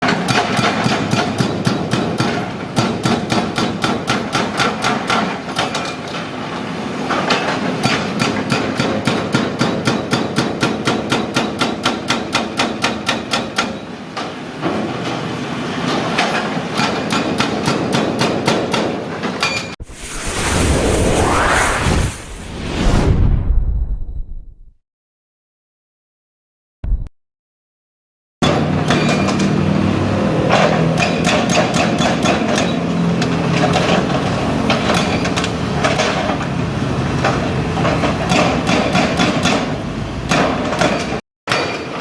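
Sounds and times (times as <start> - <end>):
hydraulic breaker hammering concrete: 0.0 - 6.2, 7.2 - 14.9, 30.4 - 42.0
rising whoosh: 19.8 - 24.8.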